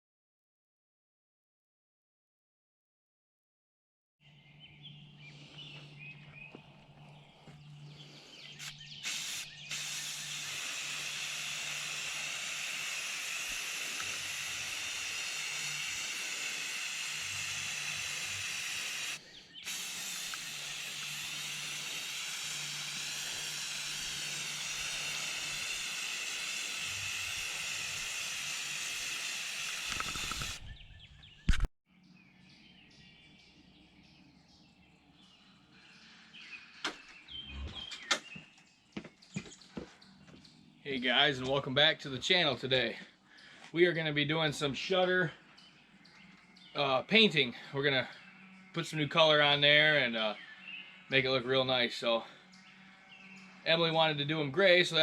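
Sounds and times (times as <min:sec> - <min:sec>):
spray hissing: 0:08.6 - 0:30.6.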